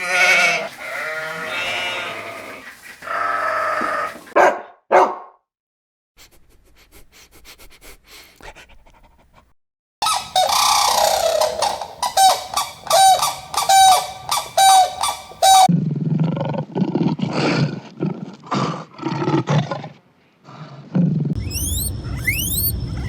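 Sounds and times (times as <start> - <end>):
deep animal roar: 0.0 - 4.3
short repeated animal calls: 10.0 - 15.7.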